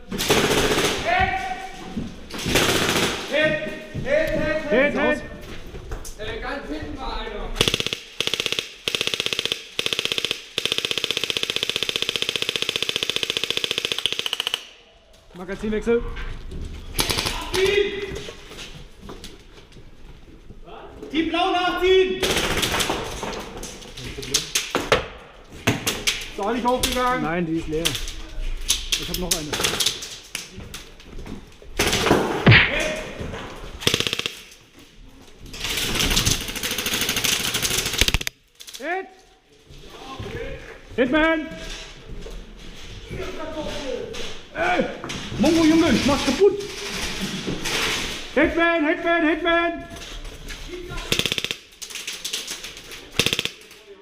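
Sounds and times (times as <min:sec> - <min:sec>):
airsoft rifle firing full-auto: 0:02.5 - 0:03.3, 0:07.6 - 0:14.7, 0:33.8 - 0:34.5, 0:51.1 - 0:51.7, 0:53.2 - 0:53.7.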